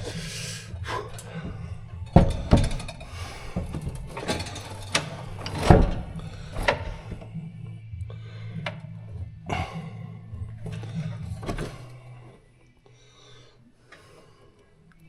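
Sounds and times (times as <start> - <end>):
metal knocks and clunks: 0.0 - 12.1
steady low hum: 0.0 - 15.0.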